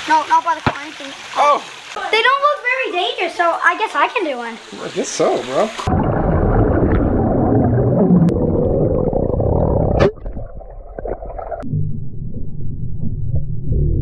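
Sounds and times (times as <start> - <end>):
muffled underwater churning rumble: 5.8 - 14.0.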